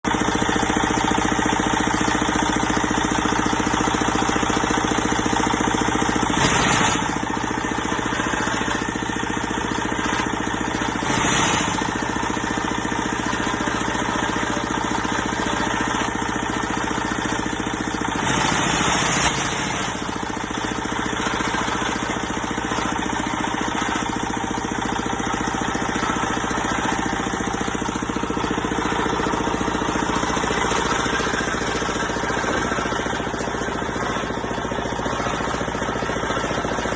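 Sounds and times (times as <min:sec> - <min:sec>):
concrete block press motor: 0:00.1 - 0:36.9.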